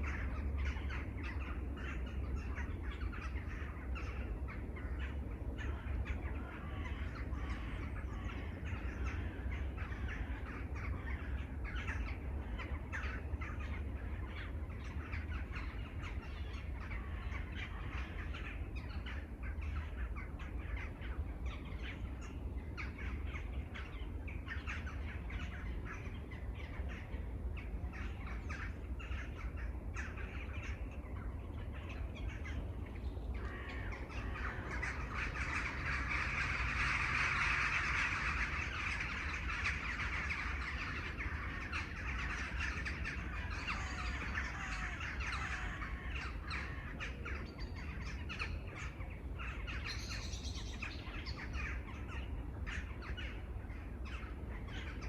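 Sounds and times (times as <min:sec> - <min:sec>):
crows cawing: 0:00.0 - 0:30.9, 0:33.3 - 0:55.0
constant low rumble: 0:00.0 - 0:55.0.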